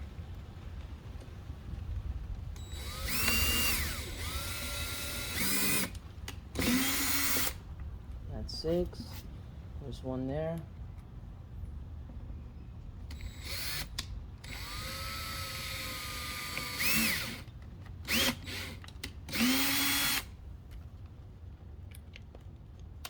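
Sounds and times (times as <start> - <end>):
power drill boring plastic: 2.6 - 6.0, 6.6 - 7.6, 13.1 - 17.5, 18.1 - 20.3.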